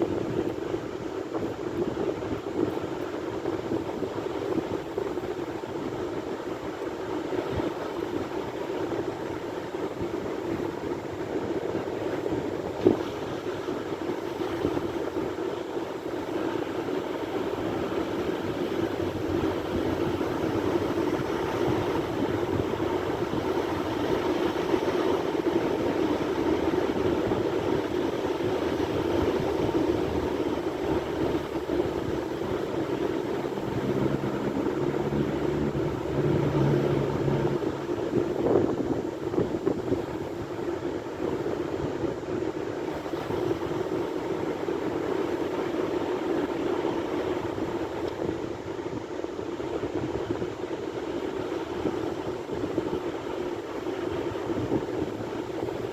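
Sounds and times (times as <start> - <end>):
sea waves surf: 0.0 - 55.9.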